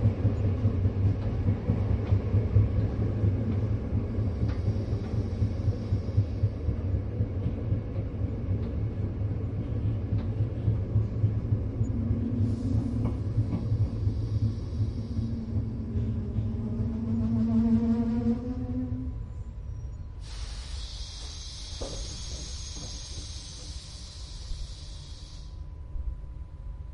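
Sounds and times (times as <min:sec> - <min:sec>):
train rumble from inside carriage: 0:00.0 - 0:26.9
low hum: 0:09.2 - 0:20.2.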